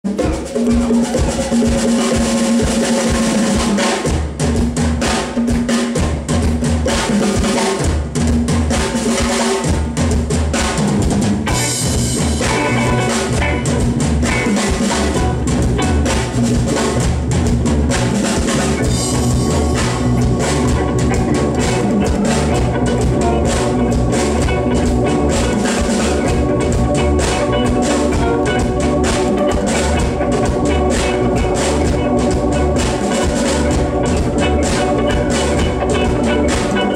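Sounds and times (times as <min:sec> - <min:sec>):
drum kit kick and snare: 0:00.0 - 0:36.9
low held bass notes: 0:11.4 - 0:36.9.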